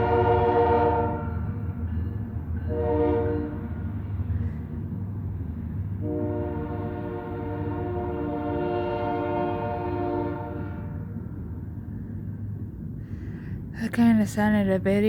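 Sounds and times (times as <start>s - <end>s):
warbly train horn blasts: 0.0s - 1.8s, 2.6s - 4.2s, 5.9s - 11.5s
train rumble: 0.0s - 15.0s.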